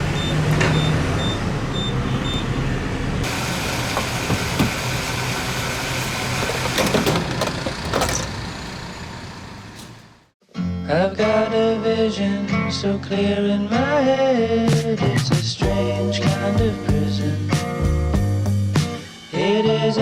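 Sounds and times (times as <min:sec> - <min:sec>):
car engine and road noise: 0:00.0 - 0:10.3.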